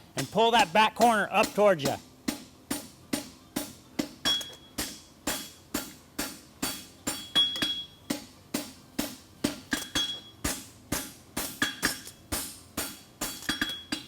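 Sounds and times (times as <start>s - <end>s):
anvil ringing: 0.2s - 2.4s, 6.2s - 8.2s, 9.7s - 10.6s
hammer striking metal on anvil: 0.2s - 14.0s.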